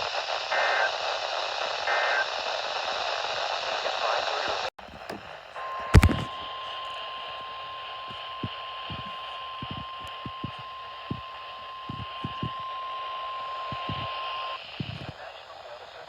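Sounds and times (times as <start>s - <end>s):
radio static hiss: 0.0s - 16.0s
faint low pops: 5.9s - 6.4s
sharp click: 6.0s - 6.3s.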